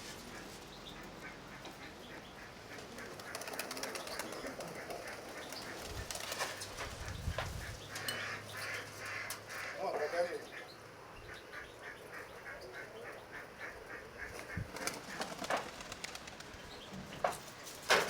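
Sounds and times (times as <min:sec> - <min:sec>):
birds calling: 0:00.0 - 0:18.0
pigeons cooing: 0:00.1 - 0:17.5
wind rumbling on microphone: 0:05.9 - 0:07.8.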